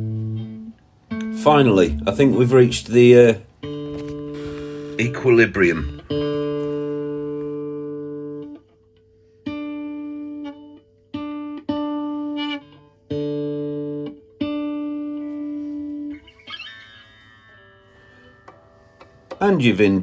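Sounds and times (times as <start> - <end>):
electric guitar chords strummed: 0.0 - 20.0.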